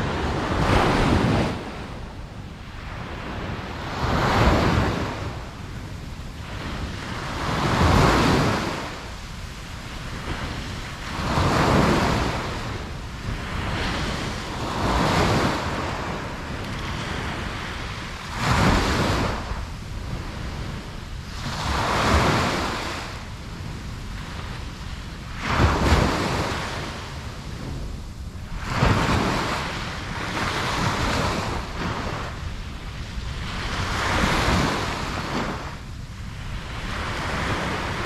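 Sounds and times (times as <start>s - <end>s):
ocean waves breaking: 0.0s - 38.0s.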